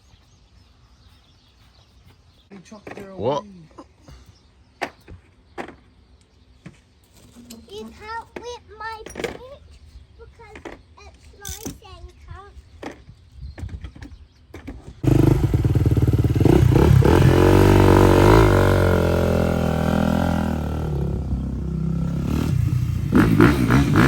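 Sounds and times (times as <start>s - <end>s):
motocross engine revving: 15.0s - 24.0s.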